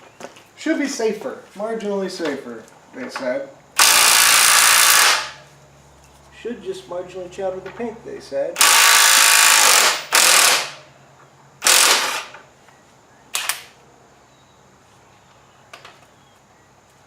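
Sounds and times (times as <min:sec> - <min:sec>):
impact wrench hammering: 0:08.6 - 0:10.8.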